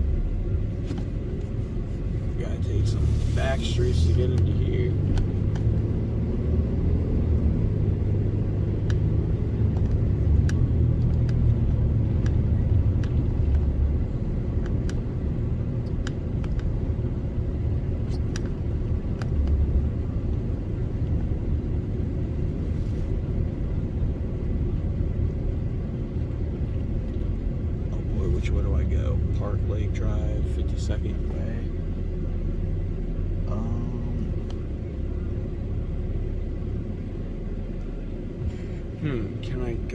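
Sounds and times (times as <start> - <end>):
truck engine and road rumble: 0.0 - 39.9
light ticks: 4.3 - 5.7, 8.8 - 9.1, 9.7 - 13.7, 14.6 - 15.1, 15.8 - 16.8, 18.0 - 19.7, 34.2 - 34.7.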